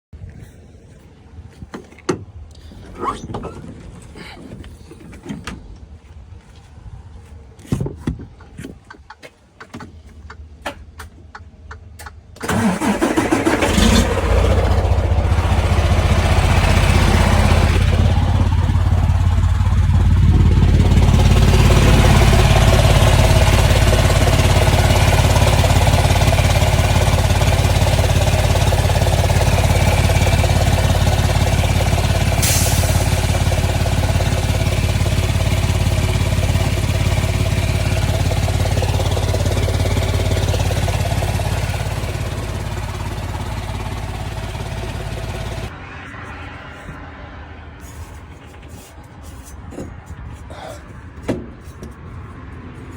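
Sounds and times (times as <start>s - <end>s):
diesel truck engine idling: 10.9s - 45.8s.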